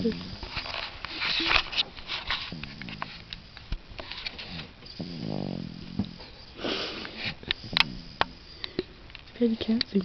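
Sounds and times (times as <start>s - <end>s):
baby snoring: 4.4s - 8.6s.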